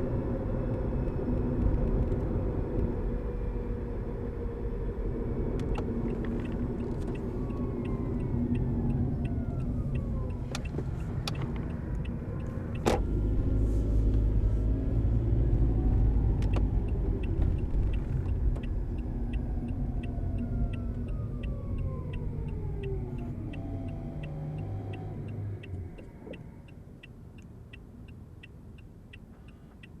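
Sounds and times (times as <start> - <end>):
car road rumble: 0.0 - 30.0
regular ticking: 6.8 - 12.8, 16.6 - 30.0.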